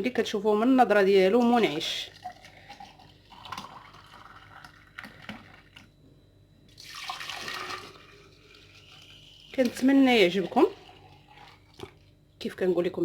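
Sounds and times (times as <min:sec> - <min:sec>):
juice pouring into glass: 0:01.6 - 0:05.9, 0:06.7 - 0:12.1.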